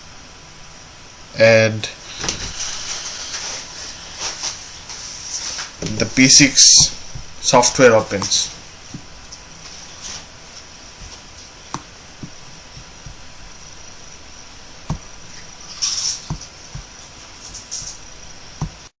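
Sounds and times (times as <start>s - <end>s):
low background hiss: 0.0s - 18.9s
rustle of higher hiss: 2.0s - 7.0s, 9.6s - 11.6s.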